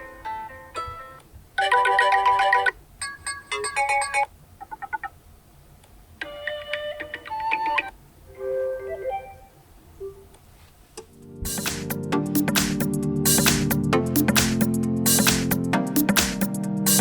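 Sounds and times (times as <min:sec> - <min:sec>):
smartphone ringtone melodies: 0:00.0 - 0:05.1.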